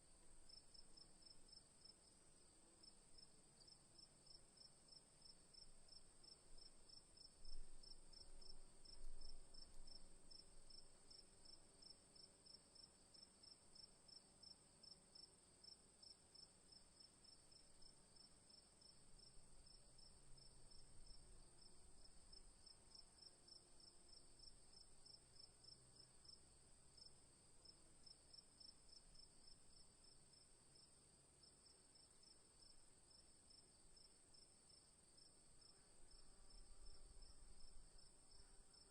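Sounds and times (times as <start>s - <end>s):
crickets chirping: 12.2s - 38.9s.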